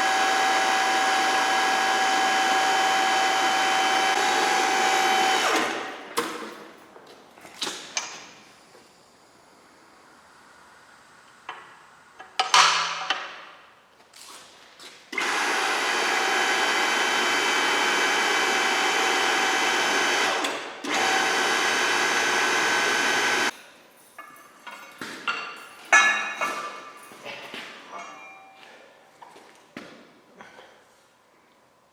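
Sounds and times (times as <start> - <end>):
power tool running: 0.0 - 6.1, 15.1 - 23.5.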